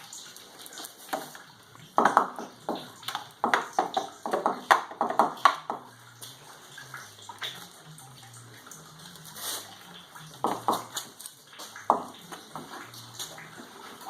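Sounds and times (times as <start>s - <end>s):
wet pulp splashing: 0.0s - 14.0s.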